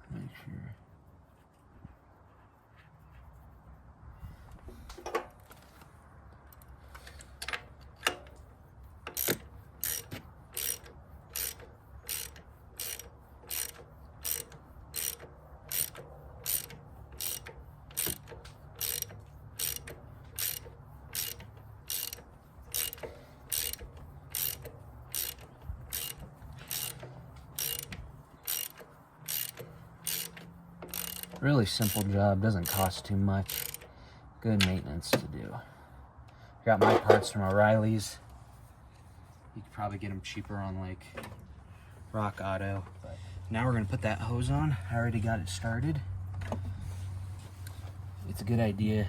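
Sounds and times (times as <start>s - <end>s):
ratchet wrench clicking: 6.5s - 33.9s.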